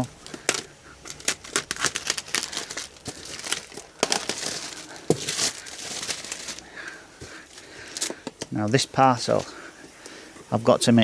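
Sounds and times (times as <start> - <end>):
packaging ripping: 0.0 - 6.6
packaging crinkling: 0.0 - 10.1.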